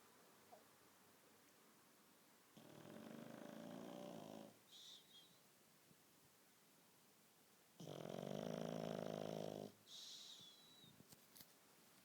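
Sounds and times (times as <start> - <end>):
puppy snoring: 2.6 - 5.2, 7.8 - 10.6.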